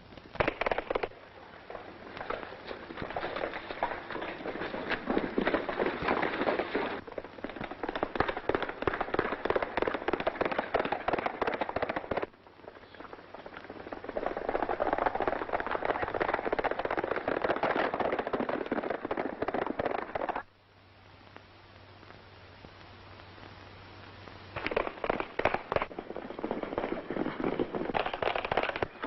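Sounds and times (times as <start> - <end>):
gunshots cracking: 0.4 - 1.2, 7.4 - 12.3, 24.6 - 29.0
galloping horse hoofbeats: 0.4 - 20.5, 24.6 - 29.0.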